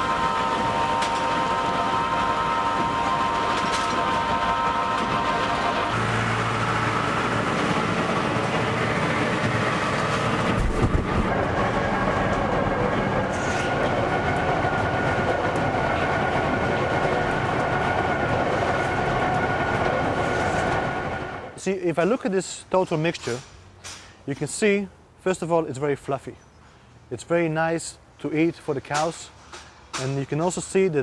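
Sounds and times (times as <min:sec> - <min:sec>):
feed mixer machinery clattering: 0:00.0 - 0:21.5
heavy thump: 0:10.5 - 0:11.3.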